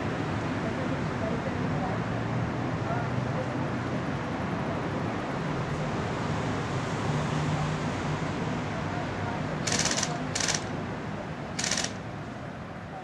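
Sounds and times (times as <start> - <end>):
steady rushing background noise: 9.6 - 10.8, 11.6 - 12.2
airsoft gun firing bursts: 9.7 - 10.7, 11.6 - 12.0.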